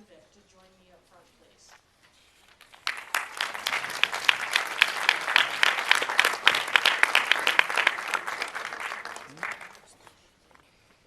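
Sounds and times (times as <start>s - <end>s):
audience applause: 2.7s - 9.9s.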